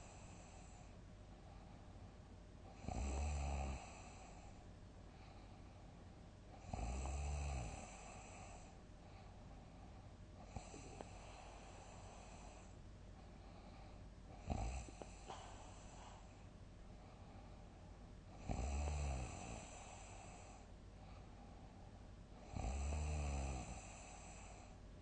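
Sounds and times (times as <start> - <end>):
steady background hiss: 0.0 - 25.0
person snoring loudly: 2.8 - 4.2, 6.6 - 8.3, 18.4 - 20.1, 22.4 - 24.3.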